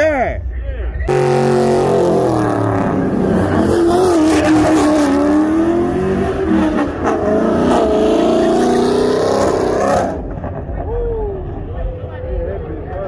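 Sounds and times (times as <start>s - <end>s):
car engine revving high: 1.1s - 10.7s.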